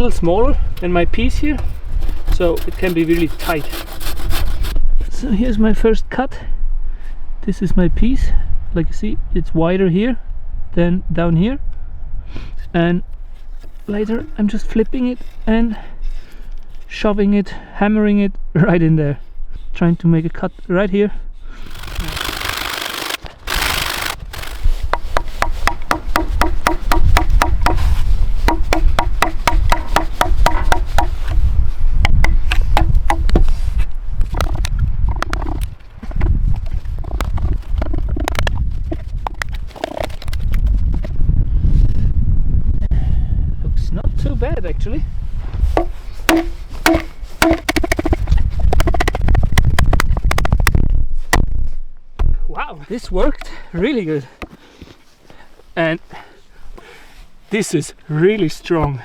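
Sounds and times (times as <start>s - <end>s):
hand tool knocking on wooden log: 24.9s - 31.4s, 32.1s - 33.5s, 45.8s - 50.7s.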